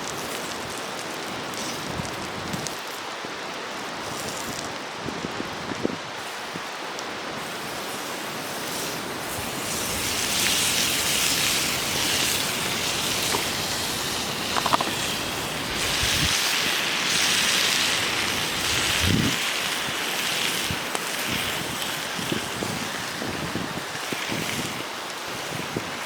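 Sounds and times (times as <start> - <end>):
food sizzling on a griddle: 0.0 - 26.0.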